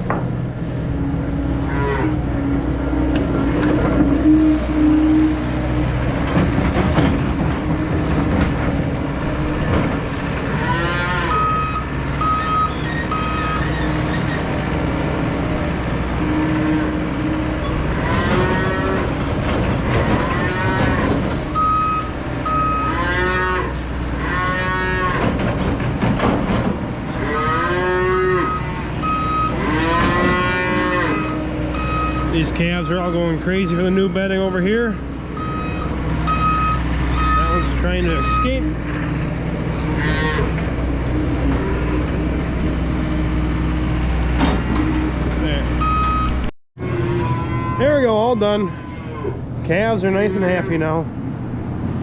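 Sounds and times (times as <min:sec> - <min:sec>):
skid loader engine running: 0:00.0 - 0:46.5
calves bawling: 0:01.0 - 0:51.1
backup alarm beeps: 0:11.4 - 0:13.6, 0:21.6 - 0:22.9, 0:28.5 - 0:29.6, 0:31.8 - 0:32.4, 0:35.4 - 0:38.7, 0:45.8 - 0:46.5.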